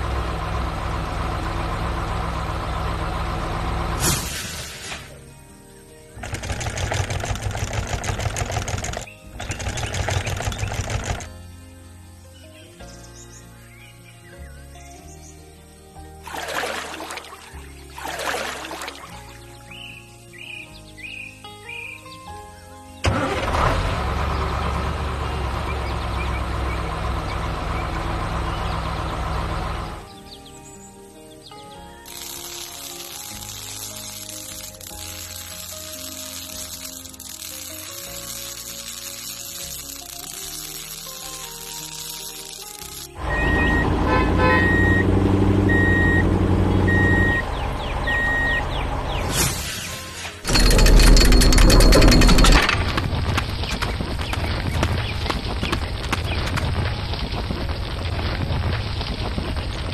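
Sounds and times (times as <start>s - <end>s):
truck engine rumbling: 0.0s - 5.0s, 23.1s - 30.1s, 40.3s - 59.9s
engine hiss: 0.0s - 12.2s, 32.0s - 50.6s
background music: 3.8s - 25.5s, 26.2s - 53.6s
reversing alarm beeping: 44.6s - 46.3s, 46.9s - 48.6s
engine clank: 48.7s - 53.3s.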